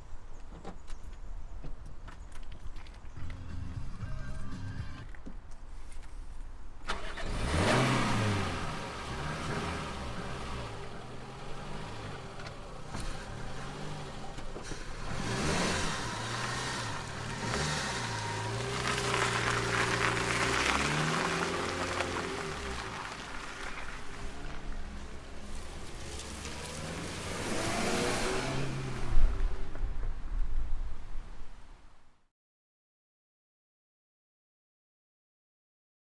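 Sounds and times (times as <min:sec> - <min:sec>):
car engine starting and revving: 0:06.8 - 0:29.9.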